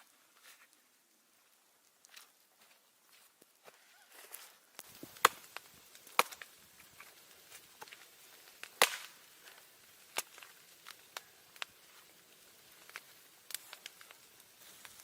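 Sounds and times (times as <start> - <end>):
axe chopping wood: 5.1 - 5.4.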